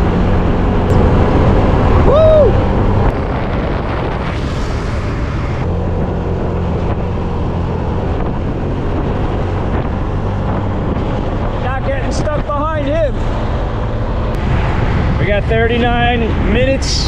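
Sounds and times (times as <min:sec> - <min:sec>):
wind noise on microphone: 0:00.0 - 0:17.0
person shouting: 0:02.0 - 0:02.6.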